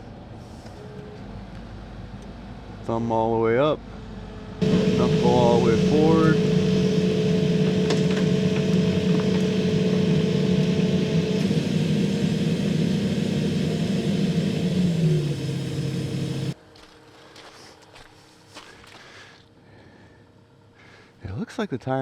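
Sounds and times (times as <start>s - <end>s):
excavator diesel engine: 4.6s - 16.6s
hydraulic whine: 4.6s - 16.6s.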